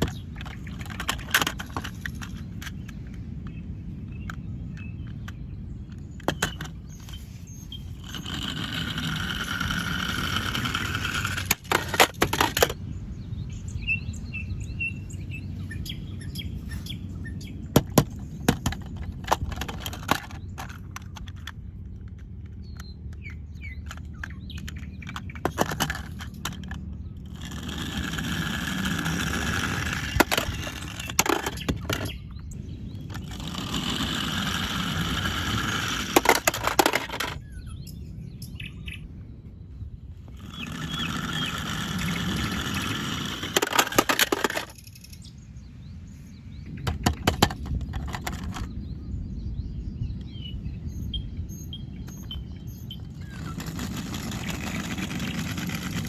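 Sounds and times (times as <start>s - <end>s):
plastic toy clicks and knocks: 0.0s - 3.2s, 5.0s - 6.8s, 8.0s - 12.8s, 17.8s - 23.2s, 23.8s - 32.2s, 33.1s - 37.4s, 40.4s - 45.3s, 46.8s - 48.7s
steady whirring noise: 0.0s - 56.0s.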